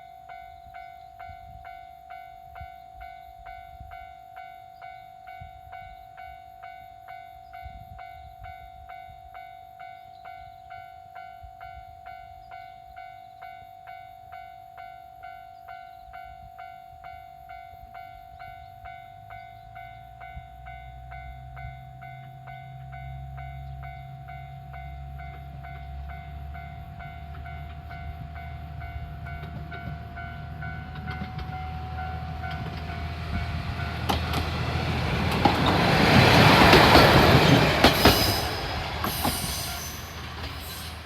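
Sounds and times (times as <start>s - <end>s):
steady warning tone: 0.0s - 41.0s
diesel railcar rumble: 17.0s - 41.0s.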